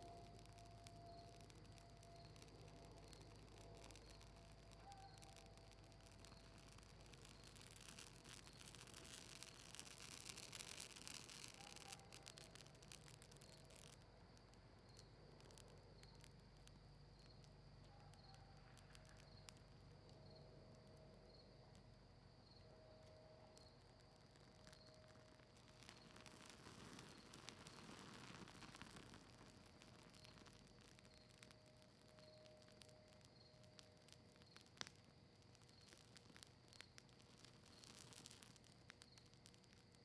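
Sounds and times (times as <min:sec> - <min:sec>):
high insect chirp: 0:00.0 - 0:20.4
campfire crackling and popping: 0:00.0 - 0:40.0.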